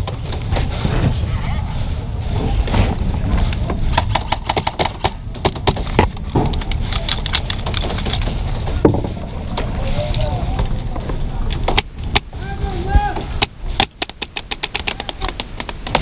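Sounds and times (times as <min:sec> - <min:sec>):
low rumble: 0:00.0 - 0:13.8
airsoft guns firing: 0:03.9 - 0:06.0.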